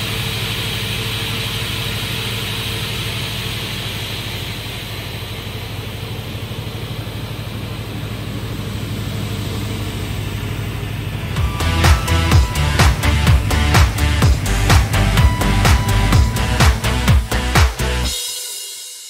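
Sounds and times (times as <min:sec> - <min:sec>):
saw motor humming: 0:09.1 - 0:18.2
electronic music: 0:11.0 - 0:19.0.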